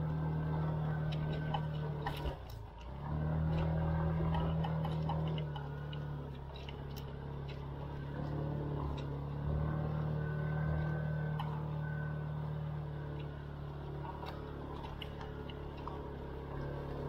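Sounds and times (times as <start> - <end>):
motorcycle engine running: 0.0 - 17.0
light ticks: 1.0 - 9.3, 13.1 - 17.0.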